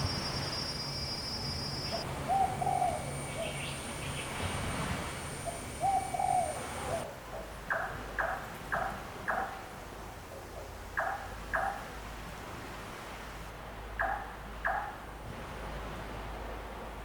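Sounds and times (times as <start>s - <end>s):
outdoor background noise: 0.0s - 17.0s
dove cooing: 2.3s - 3.6s, 5.4s - 9.5s.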